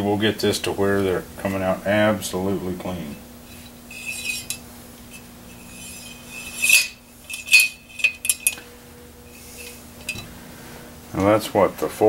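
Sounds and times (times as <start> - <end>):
cleaning rod scraping in rifle: 3.5 - 8.6, 9.3 - 10.2
sharp metallic clinks: 3.5 - 8.6.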